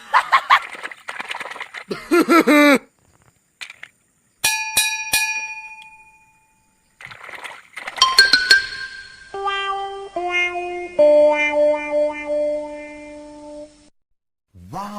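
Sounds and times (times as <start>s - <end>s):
bright chiming tones: 8.0s - 9.4s
chime-like notes: 8.0s - 9.4s.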